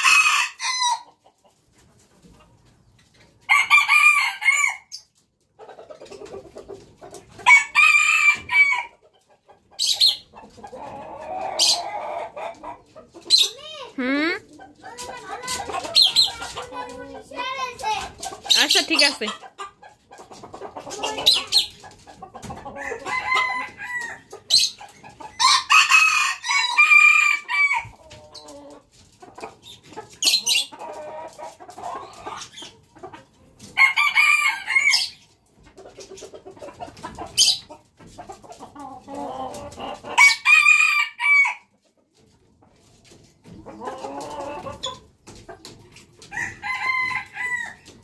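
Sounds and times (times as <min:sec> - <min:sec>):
chicken clucking and calls: 0:00.0 - 0:48.0
rooster crowing: 0:40.2 - 0:41.6, 0:46.3 - 0:47.8.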